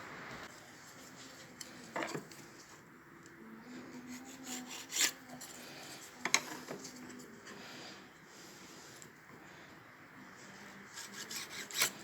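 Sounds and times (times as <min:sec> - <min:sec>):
pencil scraping on wood: 0:04.1 - 0:06.0, 0:10.9 - 0:12.0.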